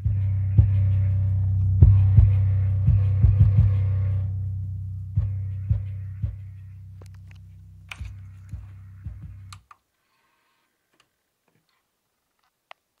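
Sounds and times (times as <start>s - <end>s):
low bass test tone: 0.0s - 9.6s
sharp clicks: 7.0s - 8.6s.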